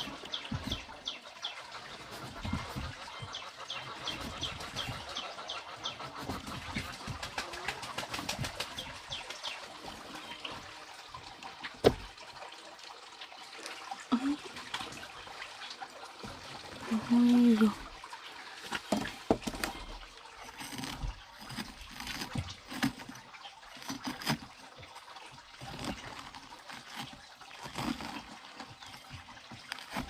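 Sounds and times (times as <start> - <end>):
small birds chirping: 0.0 - 10.6.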